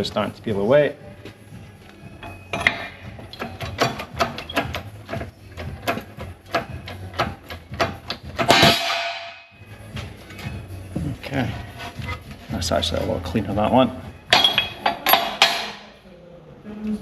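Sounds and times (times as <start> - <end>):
metal tools scraping and clicking: 2.2 - 8.6.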